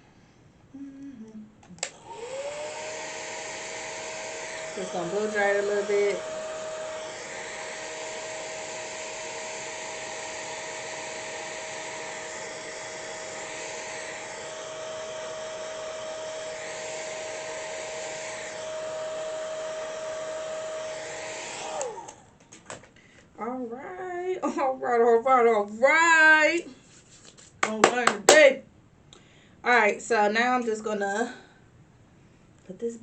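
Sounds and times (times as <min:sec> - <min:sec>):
hair dryer blowing: 0:01.8 - 0:22.4.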